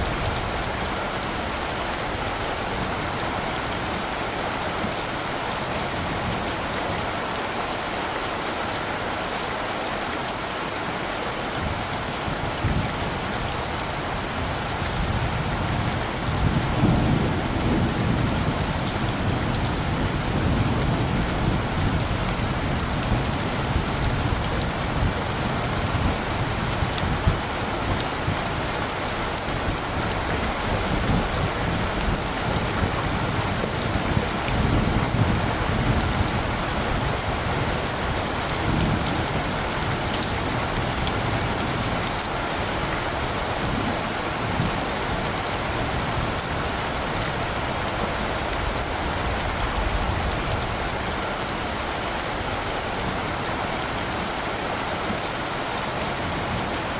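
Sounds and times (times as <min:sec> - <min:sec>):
steady rain hissing: 0:00.0 - 0:56.9
low rumble of thunder: 0:11.6 - 0:52.0.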